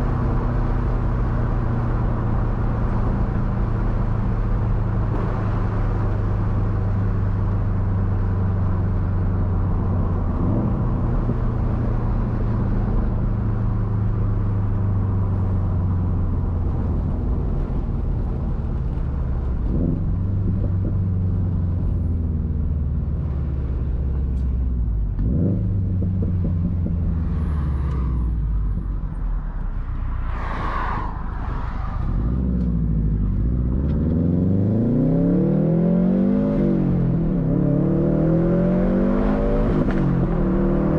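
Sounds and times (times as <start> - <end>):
car engine revving: 25.0 - 40.9.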